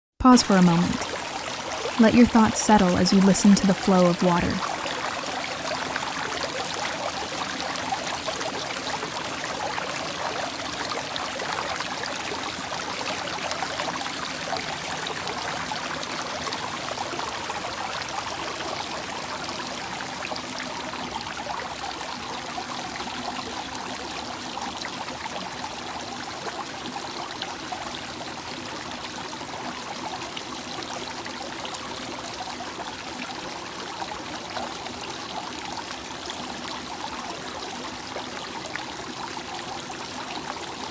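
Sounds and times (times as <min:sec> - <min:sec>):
flowing water: 0:00.2 - 0:40.9.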